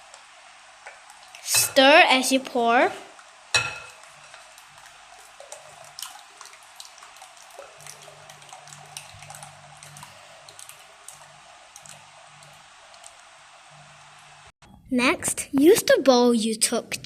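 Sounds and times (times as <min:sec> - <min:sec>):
batter pouring and stirring: 0:03.9 - 0:13.2.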